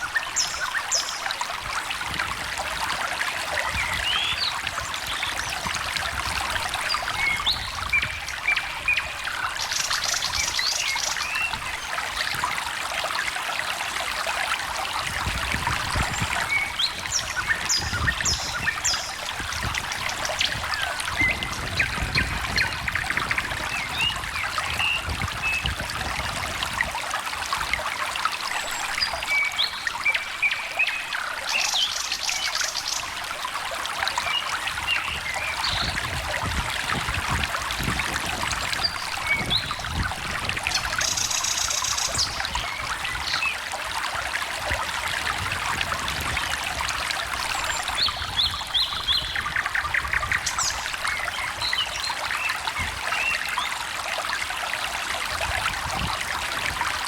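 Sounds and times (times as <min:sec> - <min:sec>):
stream trickling: 0:00.0 - 0:57.0
songbirds chirping and trilling: 0:15.2 - 0:25.6.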